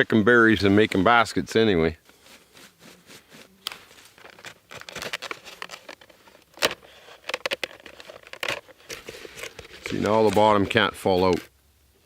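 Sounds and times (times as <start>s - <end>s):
basket crackling and rustling: 2.0s - 11.4s.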